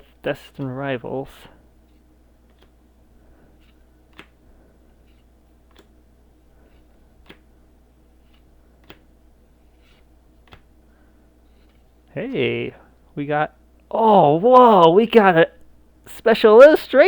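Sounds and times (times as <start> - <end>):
low steady hum: 0.0 - 17.0
trading cards snapping: 4.1 - 4.4, 5.1 - 6.0, 7.2 - 7.5, 8.3 - 9.1, 9.8 - 10.7.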